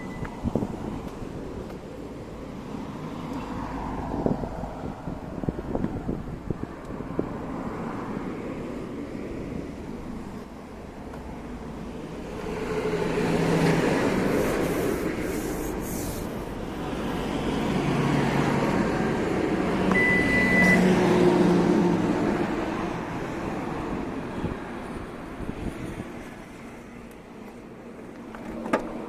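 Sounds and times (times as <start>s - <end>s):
short beep: 0.0s - 0.4s, 19.9s - 20.9s.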